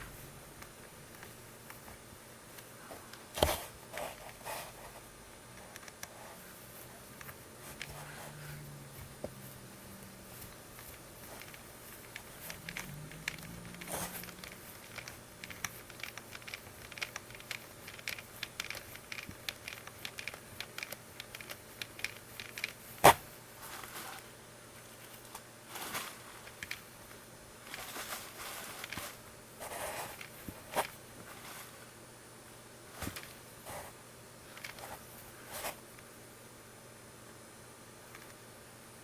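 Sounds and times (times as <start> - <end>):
rustling and scraping: 1.2 - 31.9, 32.9 - 35.8
light clicks of small parts: 38.1 - 38.4.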